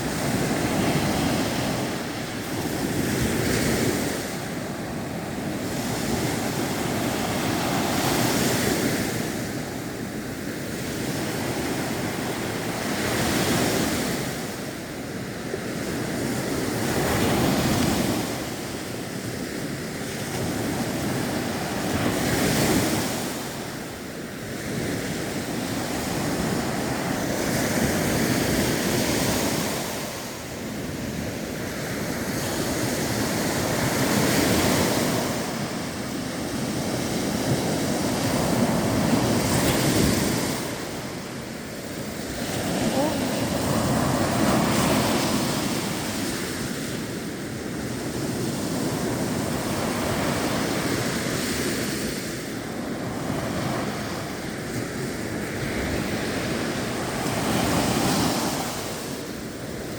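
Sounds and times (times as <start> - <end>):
sea waves breaking: 25.3 - 59.9.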